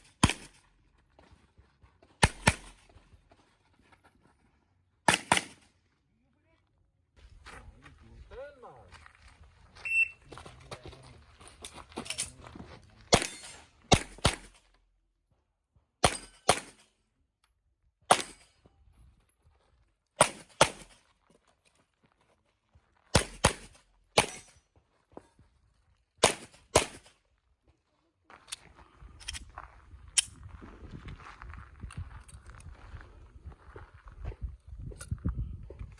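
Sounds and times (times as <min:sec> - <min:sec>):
handgun shots in quick pairs: 0:00.0 - 0:00.6, 0:02.2 - 0:02.8, 0:05.1 - 0:05.7, 0:13.1 - 0:14.6, 0:16.0 - 0:16.9, 0:18.1 - 0:18.6, 0:20.2 - 0:21.0, 0:23.1 - 0:24.6, 0:26.2 - 0:27.2.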